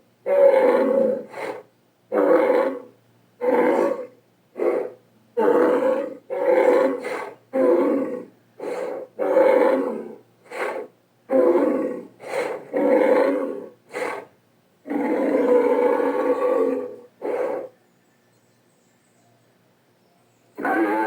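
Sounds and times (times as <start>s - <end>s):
cartoon bull grunts and roars: 20.6s - 21.0s.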